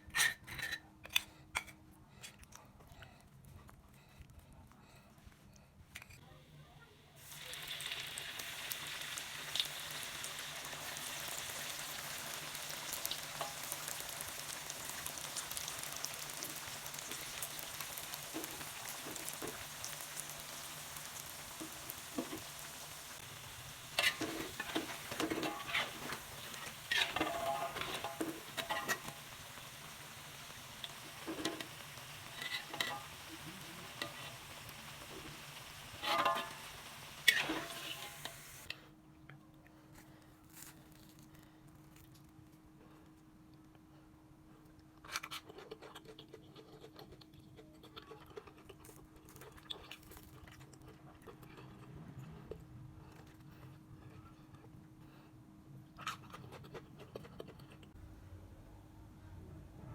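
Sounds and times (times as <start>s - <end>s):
fritters frying in hot oil: 7.2s - 38.7s
utensil scraping a pan: 23.2s - 38.7s.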